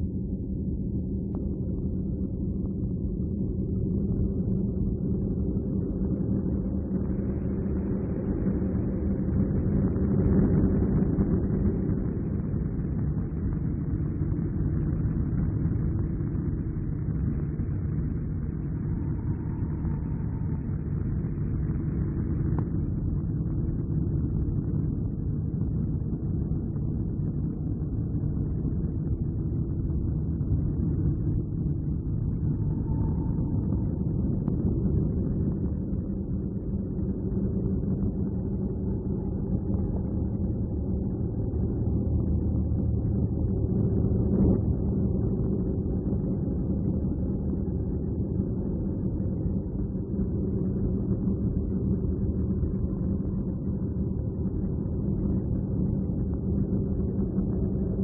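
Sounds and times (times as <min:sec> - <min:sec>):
faint held humming tones: 0:00.0 - 0:58.0
low rumbling drone: 0:00.0 - 0:58.0.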